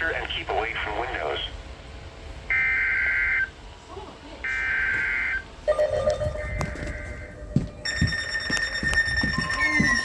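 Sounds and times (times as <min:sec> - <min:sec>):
steady high electronic tone: 0:04.6 - 0:10.0
tone sliding downward in pitch: 0:05.6 - 0:10.0.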